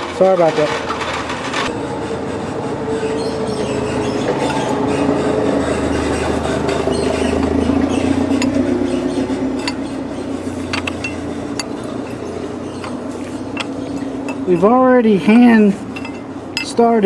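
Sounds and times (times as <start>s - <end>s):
engine droning: 0.0s - 17.0s
sharp metallic clicks: 10.7s - 12.2s.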